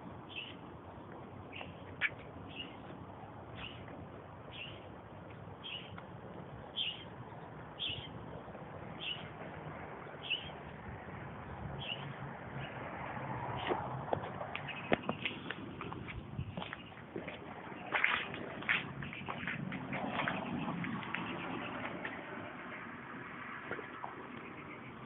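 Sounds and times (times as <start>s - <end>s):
steady background noise: 0.0s - 25.0s
bird chirping: 0.3s - 0.6s, 1.5s - 2.9s, 3.5s - 3.9s, 4.5s - 4.9s, 5.6s - 6.0s, 6.7s - 8.2s, 9.0s - 9.4s, 10.1s - 10.6s, 11.8s - 12.1s, 14.6s - 15.5s.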